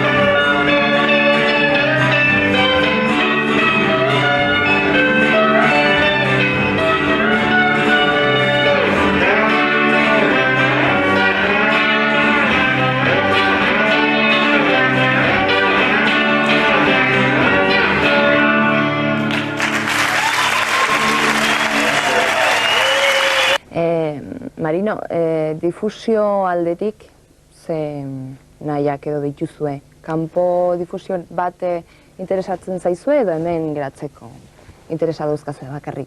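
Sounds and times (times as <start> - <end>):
pop-rock band music: 0.0 - 22.8
applause: 19.2 - 23.6.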